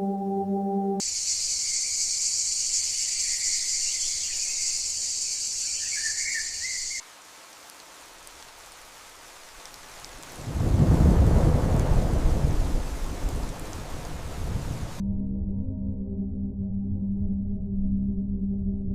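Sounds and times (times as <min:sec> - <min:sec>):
high-pitched insect drone: 0:01.0 - 0:07.0
faint hiss: 0:01.0 - 0:10.5
insect chirps: 0:01.0 - 0:10.5.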